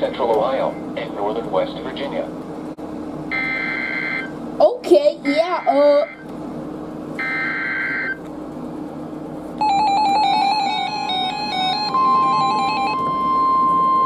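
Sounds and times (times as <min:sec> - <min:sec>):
steady warning alarm tone: 0:03.3 - 0:04.4, 0:05.2 - 0:06.2, 0:07.2 - 0:08.2, 0:09.6 - 0:14.0.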